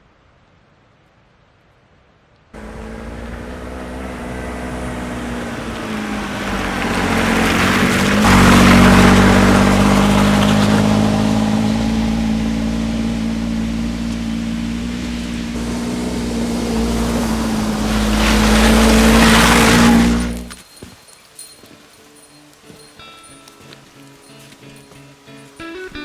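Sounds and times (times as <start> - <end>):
motor engine running: 2.6 - 20.6.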